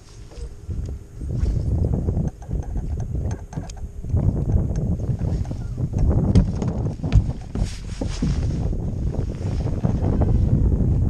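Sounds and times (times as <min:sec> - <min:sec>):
wind buffeting microphone: 0:00.0 - 0:11.0
sharp knocks: 0:06.0 - 0:07.6.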